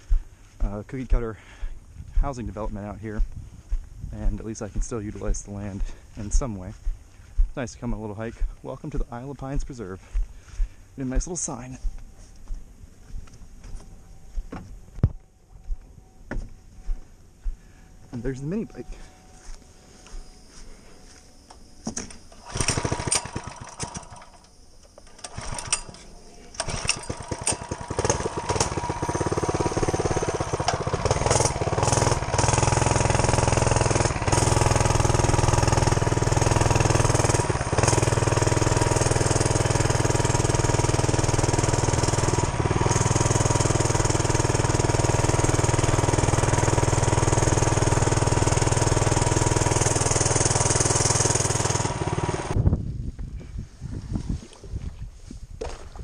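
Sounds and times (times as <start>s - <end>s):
small engine starting and running: 22.0s - 52.6s.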